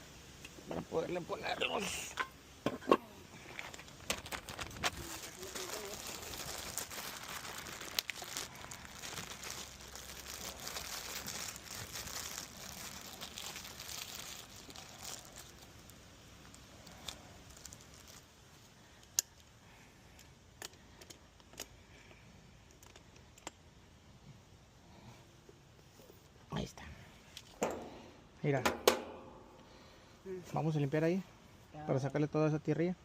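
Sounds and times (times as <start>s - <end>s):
crinkling rustling handling noise: 0.8s - 24.1s.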